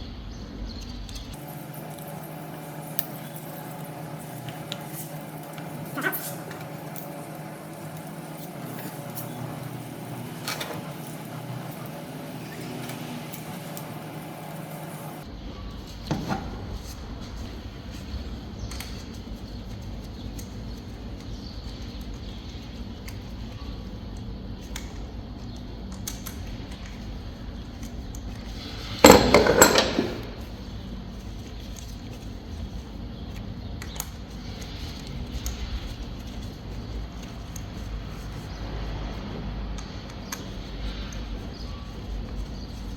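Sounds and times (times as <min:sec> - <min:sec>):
loud metallic clatter: 0:29.0 - 0:30.5
metal tools clinking: 0:29.0 - 0:30.5.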